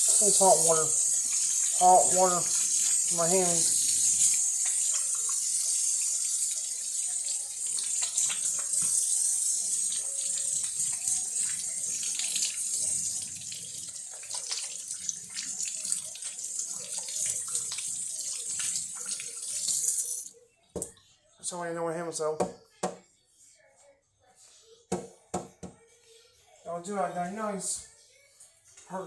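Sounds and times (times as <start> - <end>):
tap water running: 0.0 - 20.9.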